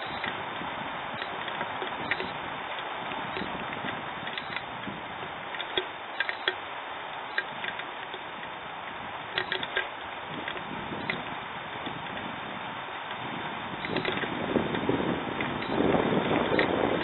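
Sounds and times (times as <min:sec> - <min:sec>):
rain hissing: 0:00.0 - 0:17.0
drops ticking on hard surface: 0:13.8 - 0:14.8.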